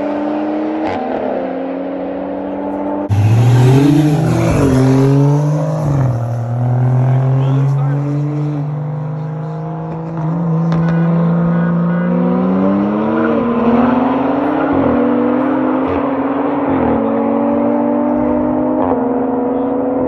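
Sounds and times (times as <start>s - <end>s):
car engine revving: 0.0s - 20.0s.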